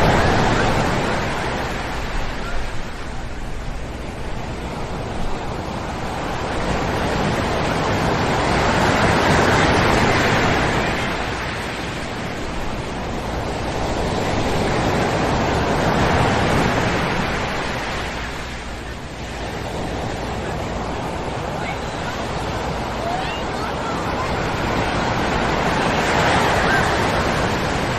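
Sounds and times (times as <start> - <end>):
ocean waves breaking on sand: 0.0 - 27.9.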